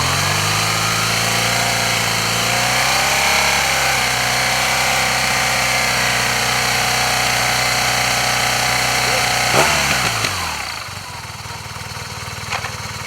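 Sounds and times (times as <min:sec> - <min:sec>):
motorcycle engine idling: 0:03.6 - 0:13.0.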